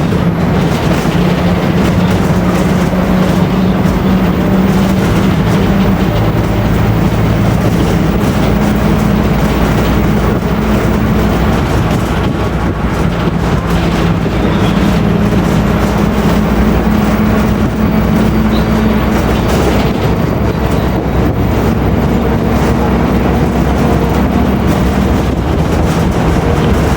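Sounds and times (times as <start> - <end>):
bus differential whining: 0.0 - 26.9
road and engine noise: 0.0 - 26.9.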